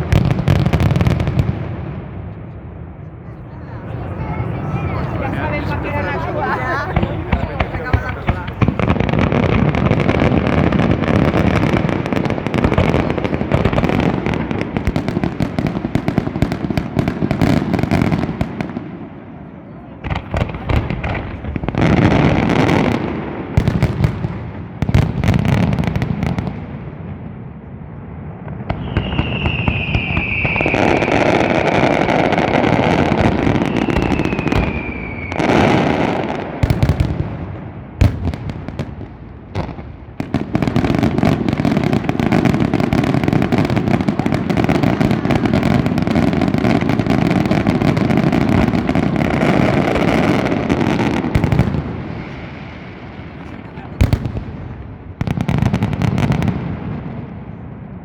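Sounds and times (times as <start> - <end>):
fireworks crackling: 0.0 - 1.9, 3.1 - 19.2, 19.9 - 26.7, 28.3 - 56.9
firework bangs: 0.0 - 58.0
whistling rockets: 3.0 - 18.7, 28.5 - 37.2.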